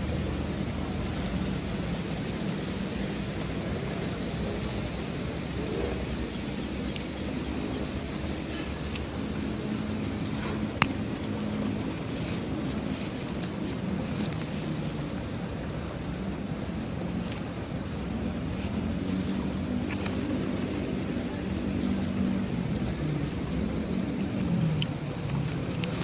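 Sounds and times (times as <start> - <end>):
insects trilling: 0.0 - 26.0
low wavering hum: 0.0 - 26.0
faint clicks: 10.0 - 15.2.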